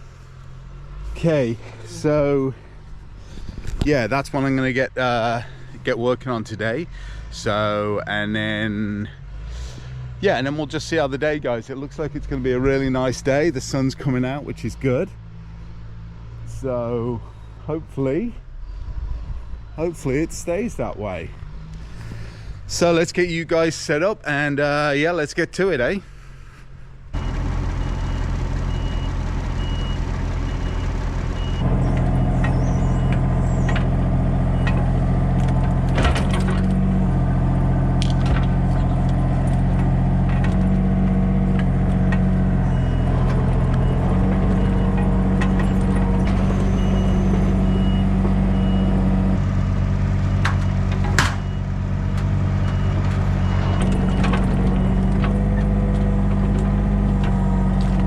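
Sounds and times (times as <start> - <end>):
engine-driven machinery running: 27.1 - 58.0.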